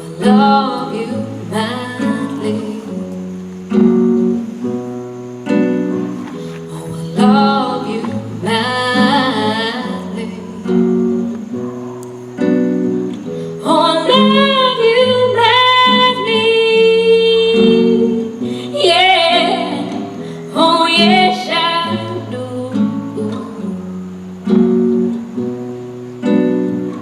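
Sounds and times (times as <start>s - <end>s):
woman singing: 0.0s - 3.2s, 6.4s - 11.0s, 13.5s - 23.9s
plucked guitar: 0.0s - 27.0s.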